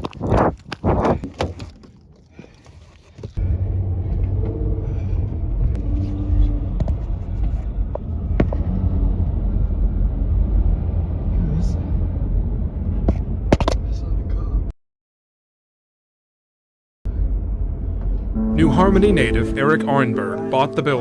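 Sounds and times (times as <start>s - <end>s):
steady low rumble: 3.4s - 14.7s, 17.1s - 20.2s
footsteps on hard floor: 13.6s - 13.8s.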